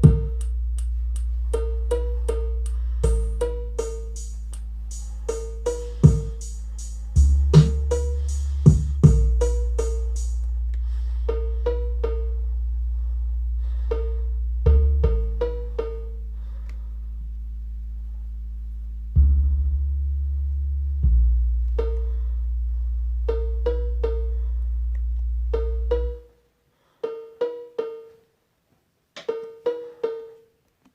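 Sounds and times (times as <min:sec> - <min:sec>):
cowbell struck rhythmically: 0:00.0 - 0:00.5, 0:01.2 - 0:10.4
low held bass notes: 0:00.0 - 0:26.3.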